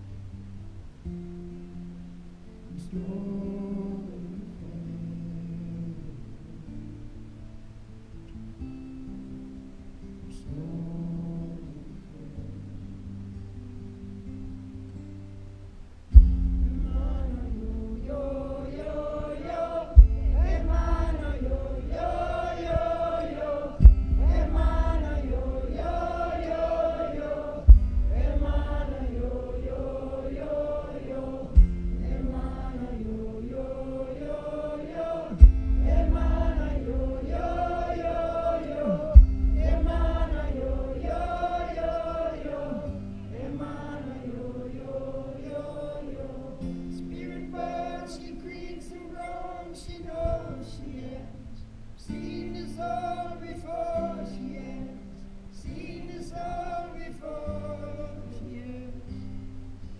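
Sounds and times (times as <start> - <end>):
wordless chant-like singing: 2.6 - 7.2, 9.9 - 13.3, 16.6 - 59.5
deep booming drum beat: 16.2 - 17.7, 20.0 - 22.0, 23.8 - 25.9, 27.6 - 29.7, 31.6 - 32.8, 35.4 - 37.7, 39.2 - 41.2
low sustained drone: 16.4 - 34.2.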